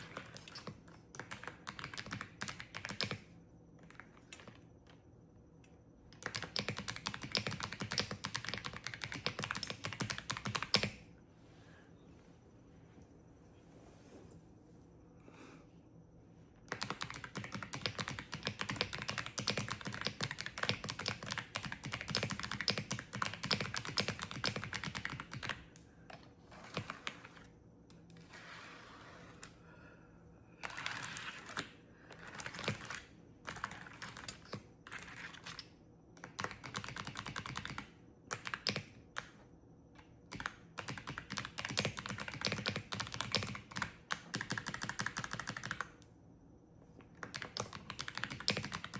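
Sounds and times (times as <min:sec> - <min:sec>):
fast typing on clicky keyboard: 0:00.0 - 0:05.0, 0:06.1 - 0:11.0, 0:16.7 - 0:25.7, 0:30.6 - 0:39.4, 0:40.0 - 0:46.0, 0:47.2 - 0:48.9.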